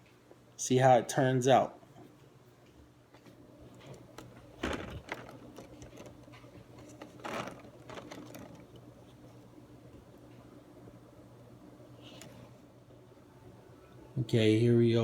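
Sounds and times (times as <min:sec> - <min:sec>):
faint low hum: 0:00.0 - 0:15.0.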